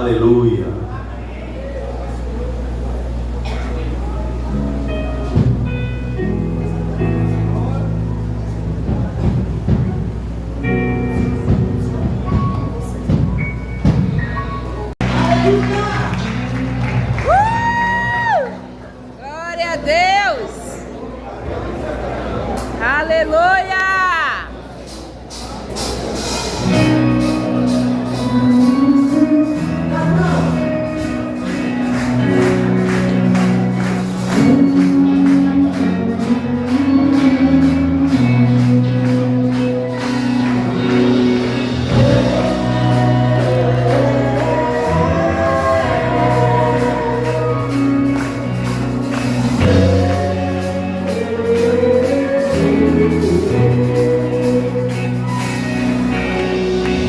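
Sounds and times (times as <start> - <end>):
bass line: 26.6 - 57.0
gospel worship singing: 27.0 - 57.0.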